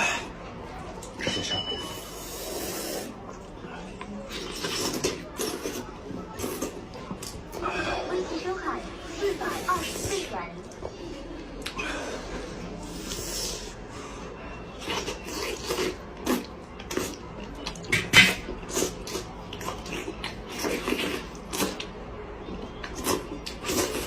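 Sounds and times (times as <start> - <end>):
wet chewing and lip-smacking: 14.8 - 24.0.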